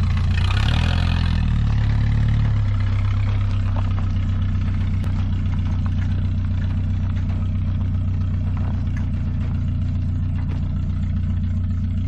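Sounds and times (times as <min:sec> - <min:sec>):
car engine running: 0:00.0 - 0:12.0.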